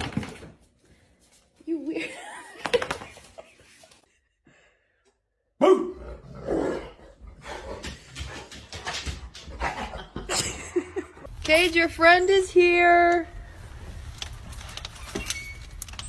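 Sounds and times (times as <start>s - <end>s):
dog barking: 5.6s - 6.0s.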